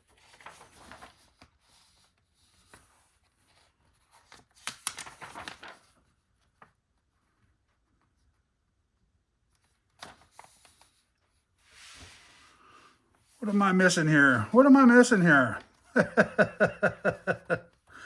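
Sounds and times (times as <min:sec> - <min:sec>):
rustling of parts and paper: 0:00.0 - 0:08.1.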